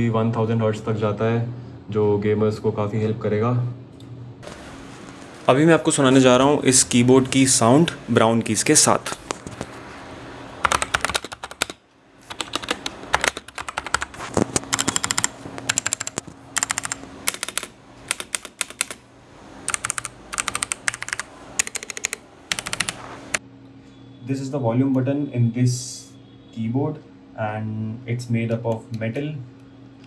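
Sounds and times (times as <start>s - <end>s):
mechanical keyboard typing: 10.6s - 19.0s, 19.6s - 23.4s.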